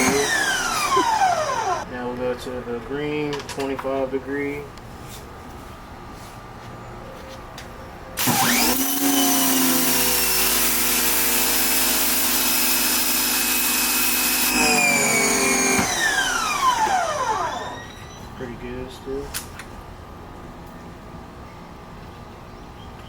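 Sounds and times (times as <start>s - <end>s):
pressure washer motor whine: 0.0s - 1.9s, 8.2s - 18.3s.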